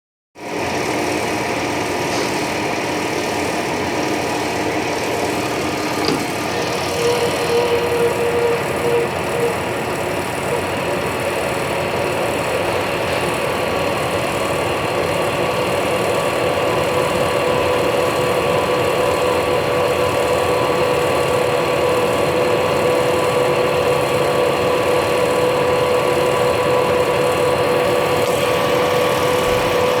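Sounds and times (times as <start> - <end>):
metal lathe cutting with ring: 0.4 - 30.0
higher-pitched tone: 5.8 - 10.9.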